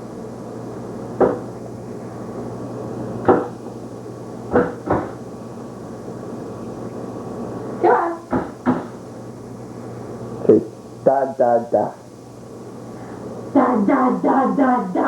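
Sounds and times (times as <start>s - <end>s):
steady low hum: 0.0s - 15.0s
baby banging on high chair tray: 4.5s - 5.2s.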